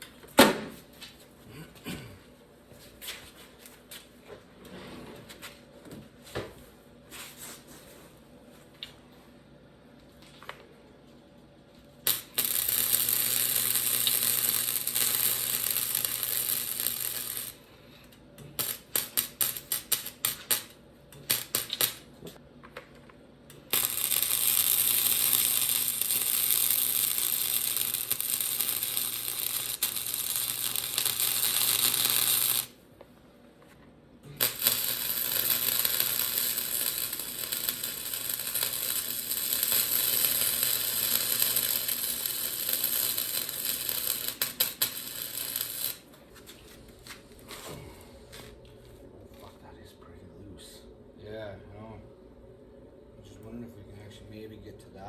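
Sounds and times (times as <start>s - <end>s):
electric arc welding crackling: 12.0s - 17.7s, 18.4s - 22.1s, 23.5s - 32.8s, 34.3s - 46.1s.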